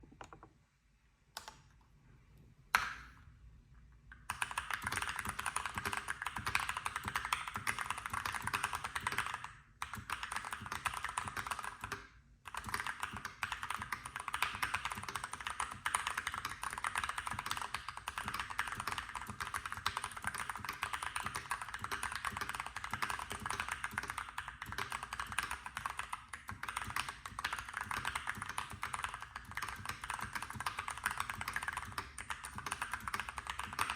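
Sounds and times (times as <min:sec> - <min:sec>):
mechanical keyboard typing: 0:04.3 - 0:33.9.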